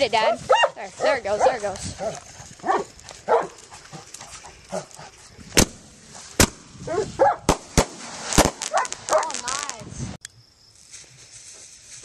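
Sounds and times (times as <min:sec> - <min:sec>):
dog barking: 0:00.2 - 0:03.6, 0:06.9 - 0:07.5, 0:08.7 - 0:09.4
firework bangs: 0:05.5 - 0:10.2.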